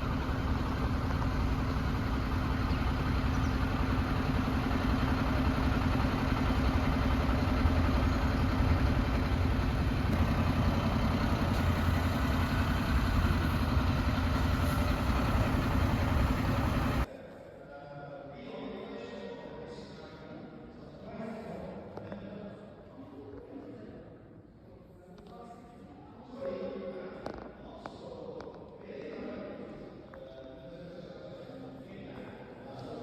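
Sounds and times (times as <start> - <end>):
vehicle engine running: 0.0 - 17.1.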